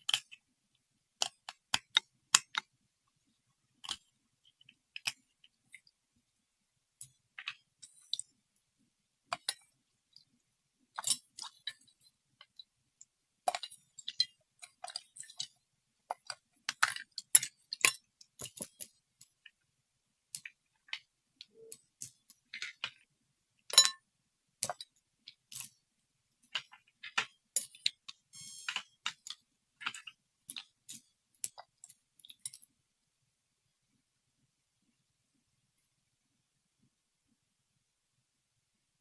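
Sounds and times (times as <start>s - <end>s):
hard objects clicking and tapping: 1.2s - 2.7s, 26.4s - 32.7s.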